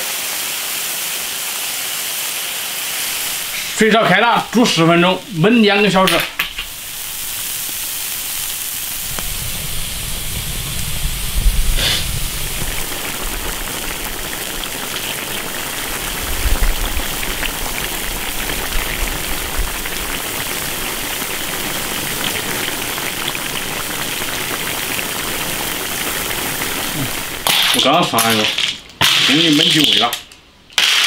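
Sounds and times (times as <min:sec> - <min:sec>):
sauce bubbling in a wok: 0:06.6 - 0:27.6
low rumble: 0:08.9 - 0:13.4.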